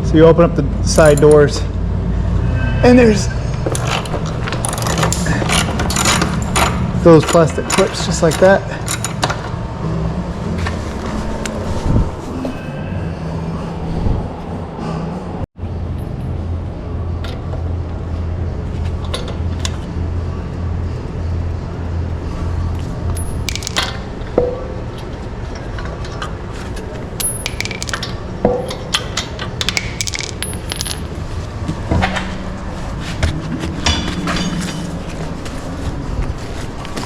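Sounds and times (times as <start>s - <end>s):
steady low hum: 0.0s - 37.0s
metal tools clinking and scraping: 1.0s - 1.6s, 3.0s - 9.4s, 33.7s - 35.6s.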